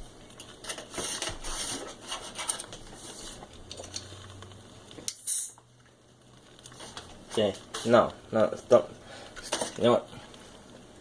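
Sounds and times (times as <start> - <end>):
cookware scraping in pan: 0.4 - 4.1.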